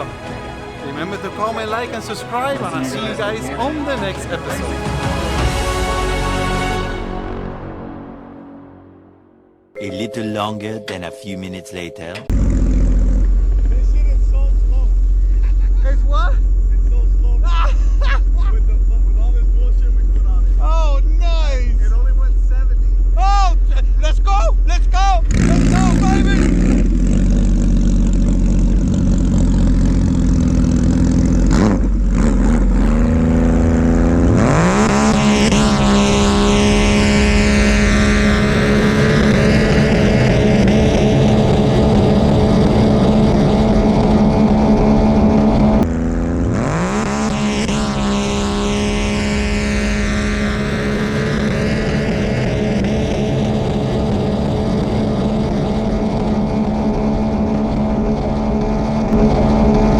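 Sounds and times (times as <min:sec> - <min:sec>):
jet ski engine revving: 0:12.3 - 0:17.0, 0:25.2 - 0:59.9.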